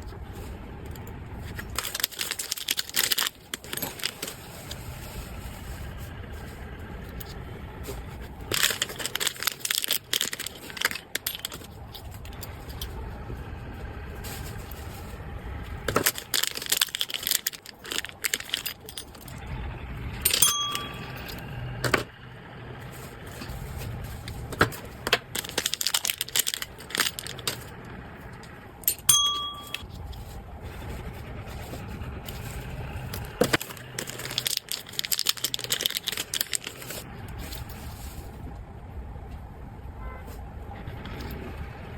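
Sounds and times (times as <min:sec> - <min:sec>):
rustling and clicking: 0:00.0 - 0:13.0, 0:13.6 - 0:19.4, 0:22.9 - 0:38.6
low steady hum: 0:00.0 - 0:41.9
short ringing dings: 0:20.3 - 0:21.3, 0:28.9 - 0:29.8.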